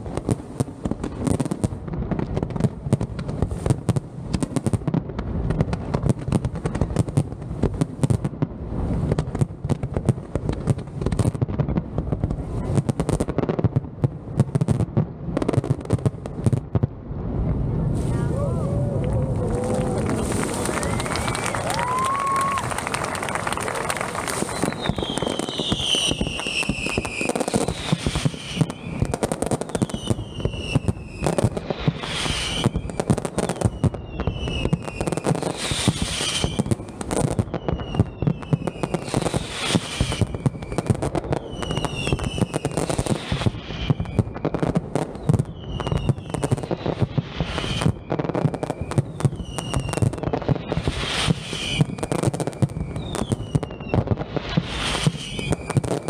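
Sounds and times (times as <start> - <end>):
fireworks bangs and crackling: 0.0 - 56.0
fireworks whistles gliding down: 17.9 - 56.0.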